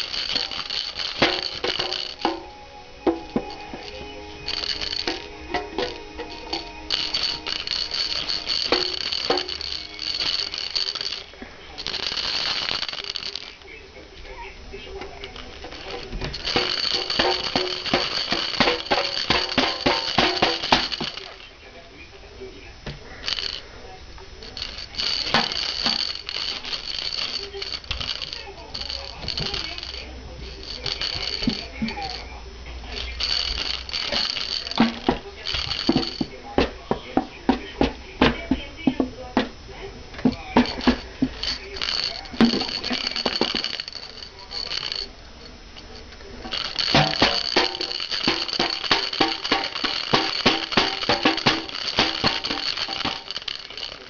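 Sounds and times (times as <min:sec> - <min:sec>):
toy banging knocks: 0:00.0 - 0:13.6, 0:15.0 - 0:21.4
metallic toy jingle: 0:00.0 - 0:21.5, 0:23.1 - 0:36.9, 0:39.5 - 0:54.0.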